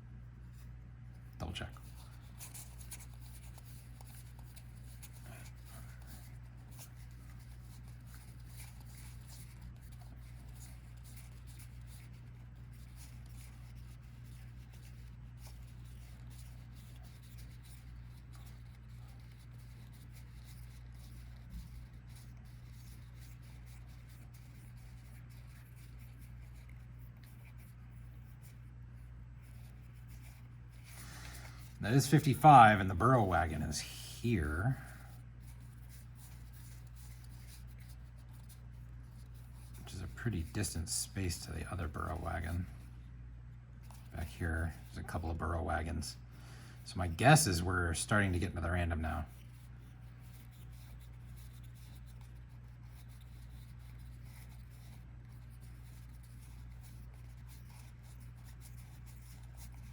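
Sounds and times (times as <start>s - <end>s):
steady low hum: 0.0s - 59.9s.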